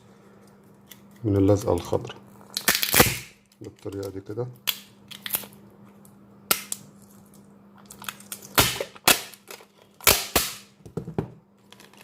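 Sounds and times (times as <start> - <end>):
adhesive tape cracking and snapping: 2.5 - 5.5.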